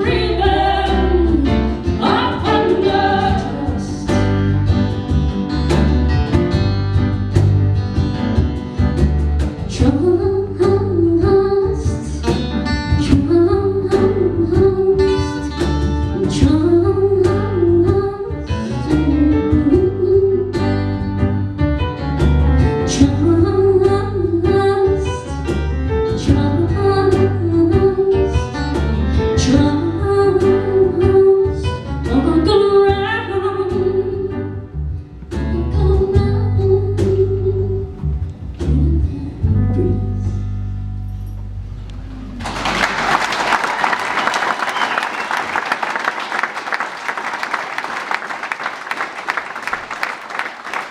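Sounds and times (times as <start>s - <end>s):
live band playing pop song: 0.0s - 40.4s.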